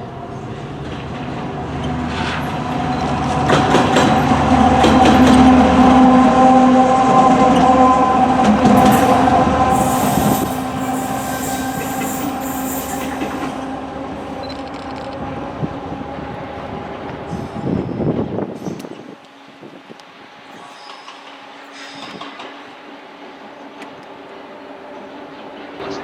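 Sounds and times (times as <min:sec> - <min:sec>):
diesel train engine: 0:00.0 - 0:26.0
train wheels clicking on rails: 0:00.4 - 0:05.7, 0:08.4 - 0:13.7.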